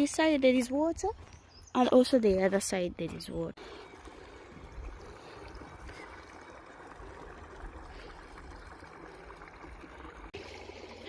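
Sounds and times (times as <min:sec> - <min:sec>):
water flowing steadily: 0:03.5 - 0:11.0.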